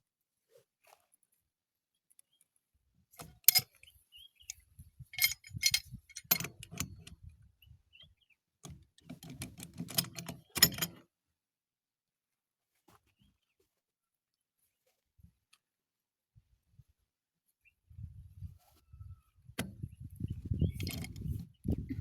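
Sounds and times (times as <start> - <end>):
metallic clinks and scrapes: 3.2 - 3.9, 5.1 - 7.1, 9.1 - 11.0, 20.6 - 21.5.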